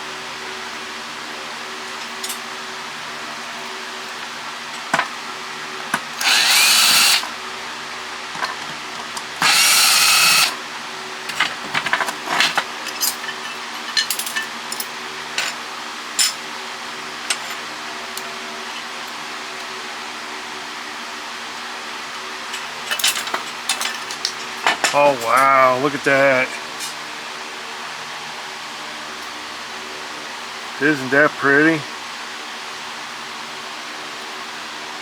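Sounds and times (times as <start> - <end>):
power drill driving screws: 6.2 - 7.3, 9.4 - 10.6.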